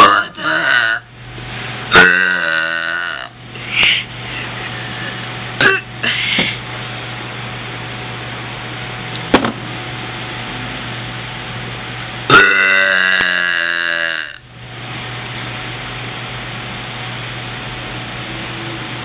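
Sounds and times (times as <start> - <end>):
woman burping loudly: 0.0 - 1.1, 1.9 - 3.4, 5.6 - 6.2, 12.3 - 14.4.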